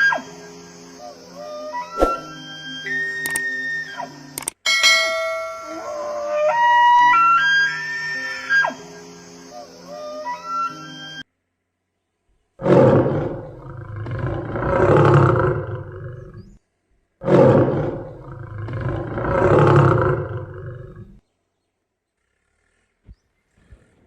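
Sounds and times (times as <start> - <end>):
big cat roaring: 12.6 - 16.6, 17.2 - 21.2.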